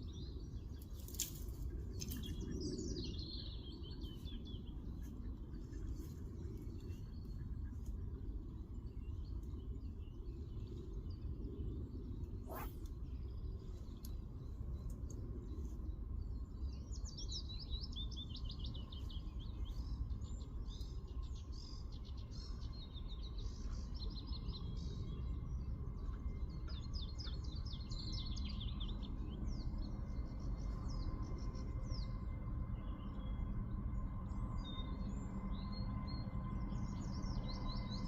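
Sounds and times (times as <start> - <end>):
low background rumble: 0.0 - 38.0
songbird twittering: 12.3 - 13.5.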